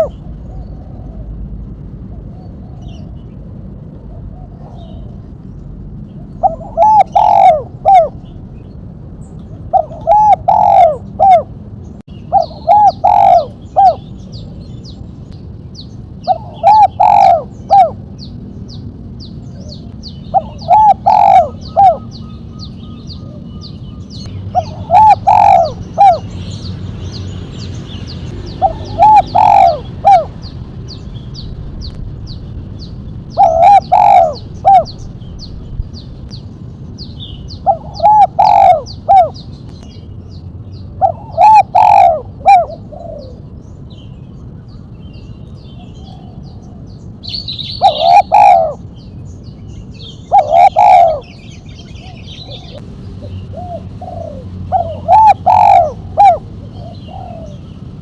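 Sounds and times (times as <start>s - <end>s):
dove cooing: 0.0s - 1.4s, 4.1s - 5.3s, 6.2s - 8.3s, 9.5s - 11.6s, 12.2s - 14.3s, 16.2s - 18.2s, 19.5s - 26.5s, 28.5s - 30.6s, 33.3s - 35.0s, 37.5s - 39.5s, 41.0s - 43.5s, 47.6s - 48.9s, 50.0s - 58.0s.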